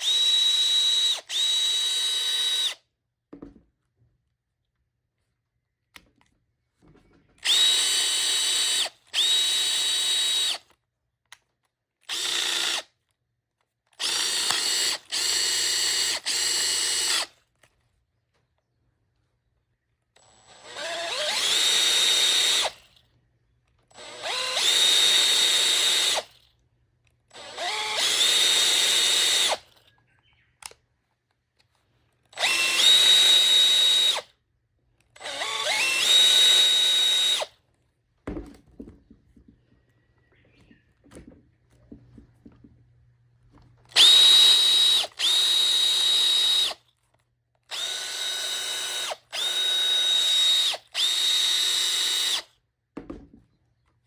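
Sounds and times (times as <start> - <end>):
cordless drill whining: 0.0 - 2.9, 7.0 - 10.8, 12.0 - 13.0, 13.8 - 17.8, 20.0 - 23.1, 23.7 - 30.8, 32.2 - 34.4, 35.0 - 37.7, 43.8 - 52.5.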